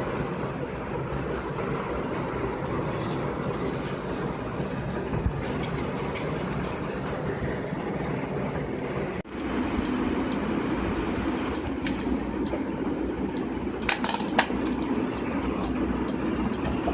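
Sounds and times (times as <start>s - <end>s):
hard drive clicking: 9.3s - 16.9s
hard drive whirring hum: 9.3s - 16.9s.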